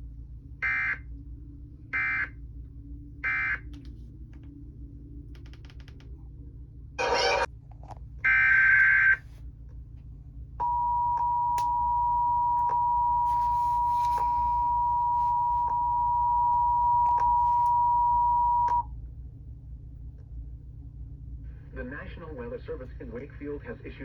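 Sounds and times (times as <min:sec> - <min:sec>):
low hum: 0:00.0 - 0:24.0
faint clicks: 0:05.3 - 0:06.2
data tone bursts: 0:10.6 - 0:18.8
two-tone attention signal: 0:10.6 - 0:18.8.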